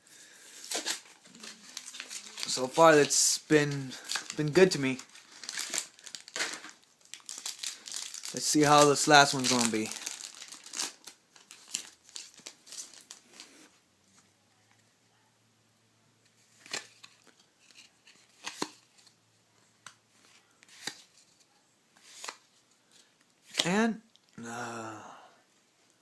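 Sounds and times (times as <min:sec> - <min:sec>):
foil wrapper crinkling and tearing: 0:00.6 - 0:13.4.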